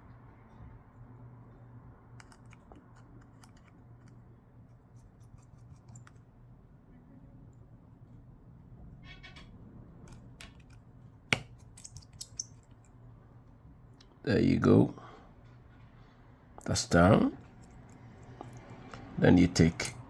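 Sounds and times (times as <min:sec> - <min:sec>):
small screwdriver clicks: 0:02.2 - 0:04.2.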